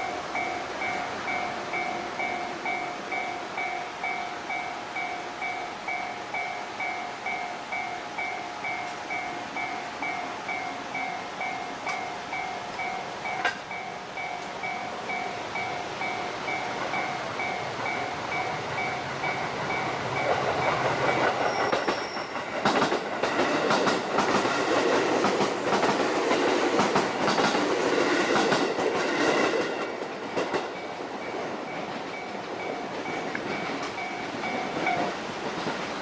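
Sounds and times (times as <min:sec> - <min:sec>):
level crossing bell ringing: 0:00.0 - 0:21.3, 0:30.8 - 0:35.1
train rumble: 0:00.0 - 0:36.0
wheels clacking over rail joints: 0:08.7 - 0:36.0.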